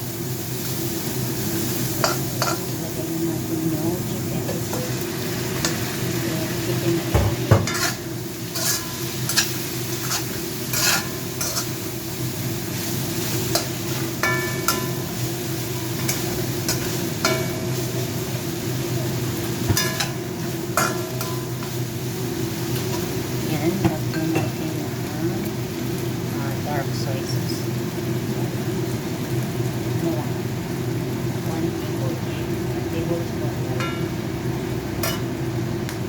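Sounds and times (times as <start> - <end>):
food sizzling in oil: 0.0 - 36.0
utensil scraping and knocking pan: 7.2 - 8.0.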